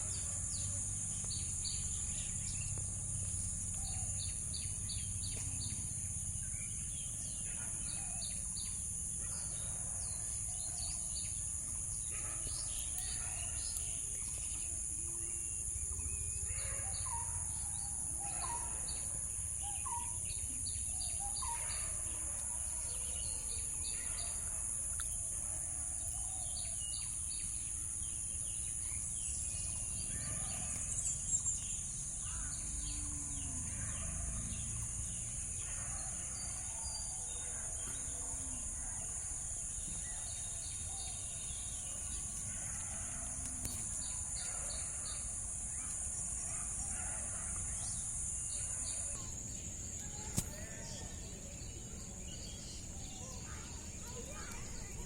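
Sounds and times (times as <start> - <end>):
birds chirping: 28.4 - 55.0.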